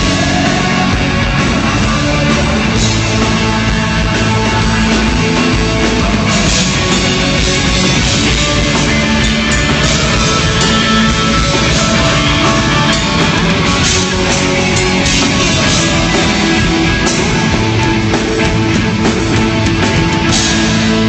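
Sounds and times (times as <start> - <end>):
electric guitar: 0.0 - 21.0
rock band playing live: 0.0 - 21.0.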